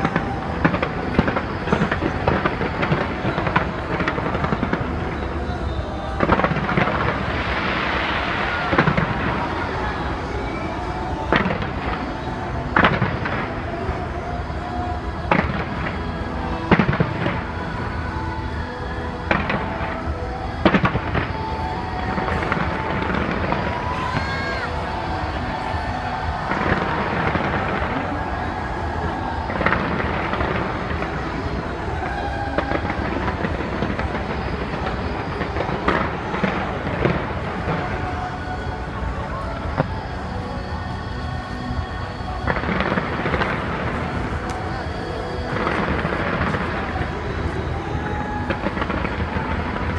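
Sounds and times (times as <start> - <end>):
firework bangs echoing: 0.0 - 14.0
fireworks rumbling and crackling: 0.0 - 49.9
steady background din: 0.0 - 49.9.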